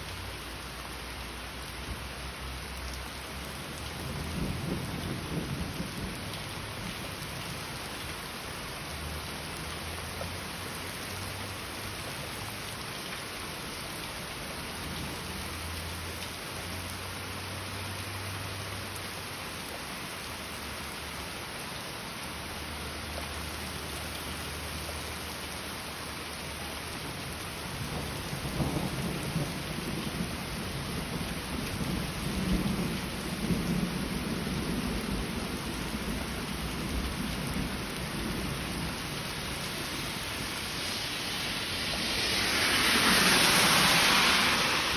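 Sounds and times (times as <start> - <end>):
heavy rain: 0.0 - 44.9
thunder rumbling: 3.9 - 7.3, 27.8 - 44.9.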